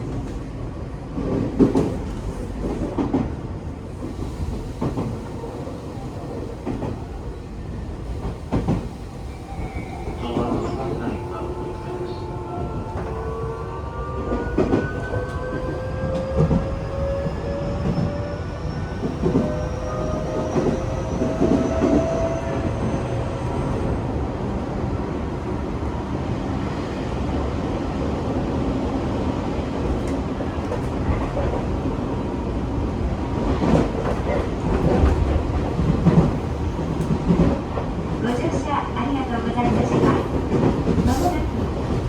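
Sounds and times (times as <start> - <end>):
train running rumble: 0.0 - 18.2, 28.5 - 42.0.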